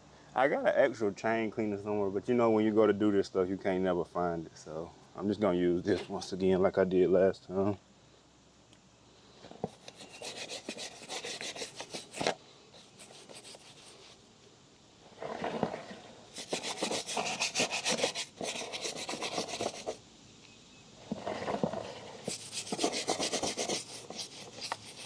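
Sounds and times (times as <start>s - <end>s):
chain being scrubbed: 9.7s - 14.2s, 16.3s - 20.0s, 21.2s - 25.0s.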